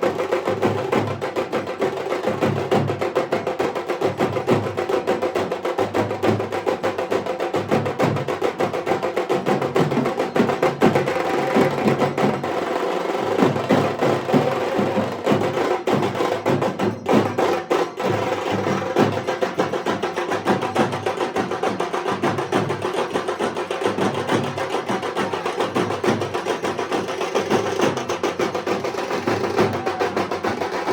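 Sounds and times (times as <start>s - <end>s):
drums beaten with sticks: 0.0s - 30.9s.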